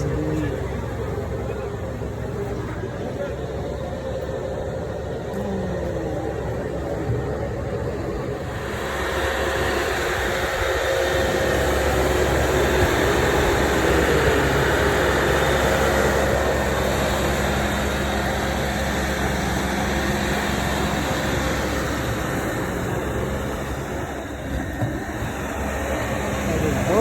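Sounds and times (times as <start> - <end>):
engine running: 0.0 - 27.0.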